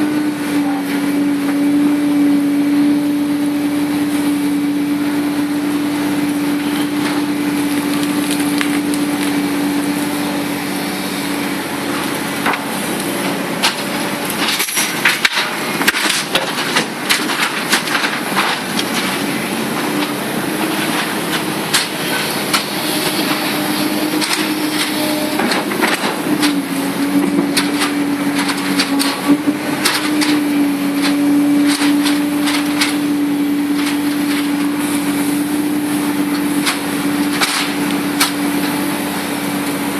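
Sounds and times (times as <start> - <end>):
excavator diesel engine running: 0.0 - 39.9
sharp cracks and knocks: 7.0 - 9.4, 12.4 - 19.2, 19.8 - 34.7, 36.3 - 38.8.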